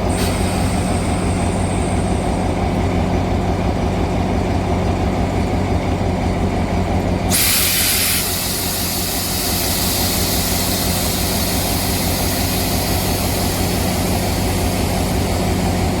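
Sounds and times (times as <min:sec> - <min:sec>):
diesel locomotive engine idling: 0:00.0 - 0:16.0
air hissing: 0:07.3 - 0:16.0.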